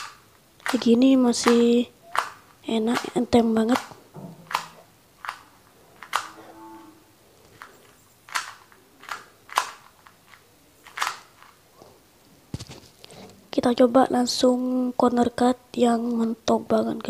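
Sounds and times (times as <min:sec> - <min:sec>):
puzzle cube plastic clicks: 0:00.0 - 0:06.4, 0:07.4 - 0:11.6.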